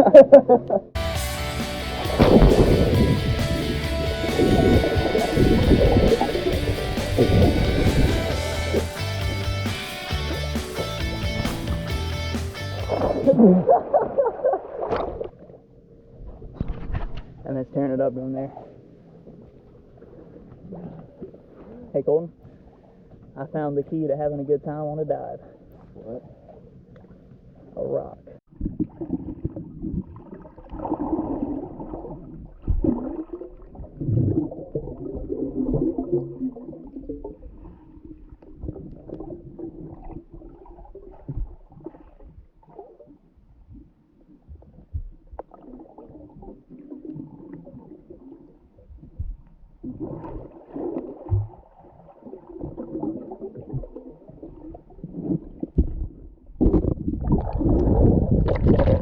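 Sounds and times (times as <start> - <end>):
underwater gurgling and bubbling: 4.2 - 8.4, 28.6 - 43.1, 44.5 - 59.0.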